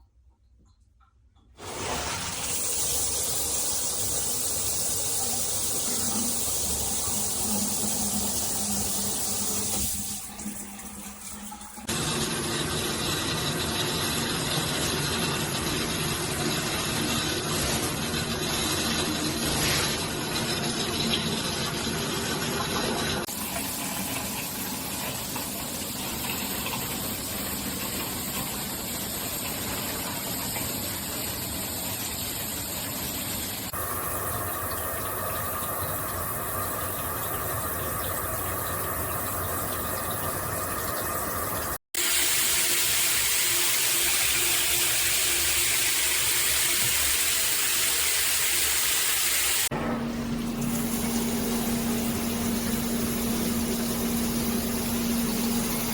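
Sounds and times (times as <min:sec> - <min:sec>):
water spraying from shower head: 0:01.6 - 0:11.9.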